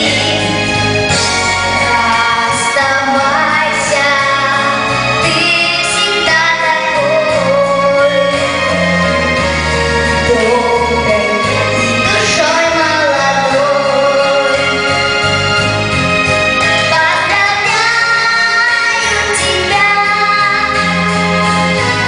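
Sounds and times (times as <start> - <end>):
instrumental backing with bass line: 0.0 - 22.0
woman singing: 1.7 - 9.2, 10.2 - 14.8, 16.8 - 22.0.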